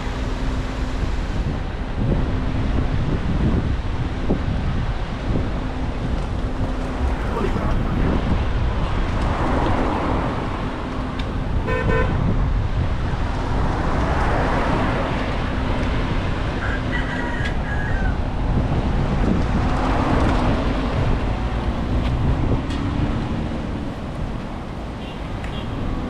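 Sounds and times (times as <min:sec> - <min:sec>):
road traffic: 0:00.0 - 0:26.0
car horn toot: 0:11.6 - 0:12.3.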